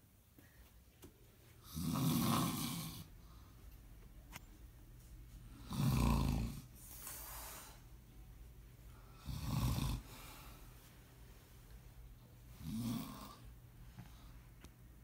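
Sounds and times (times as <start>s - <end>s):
man snoring loudly: 1.7s - 3.1s, 5.6s - 6.7s, 9.2s - 10.1s, 12.6s - 13.4s
quiet breath: 3.2s - 3.9s, 6.6s - 9.4s, 10.0s - 12.6s, 13.2s - 14.7s.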